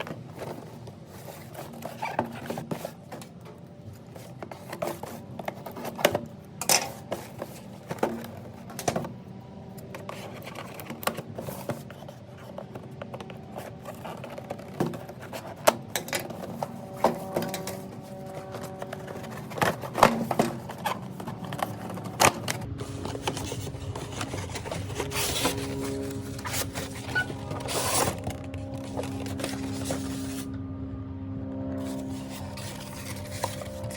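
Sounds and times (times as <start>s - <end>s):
plastic packaging being handled: 0.0s - 9.2s, 9.8s - 30.5s, 31.8s - 33.9s.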